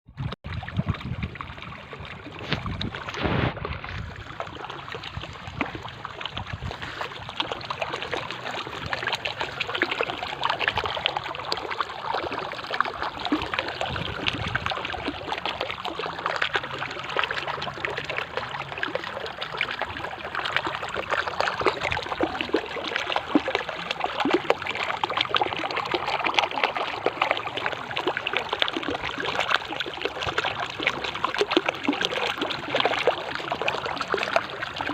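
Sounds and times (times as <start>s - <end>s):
stream babbling and splashing: 0.2s - 34.9s.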